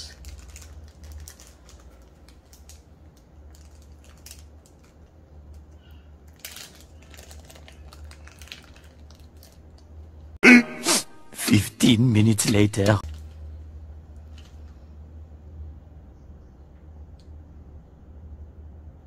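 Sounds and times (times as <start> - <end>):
low steady hum: 0.0 - 19.0
light clicks and rustles of handling: 0.1 - 10.1, 13.0 - 15.0.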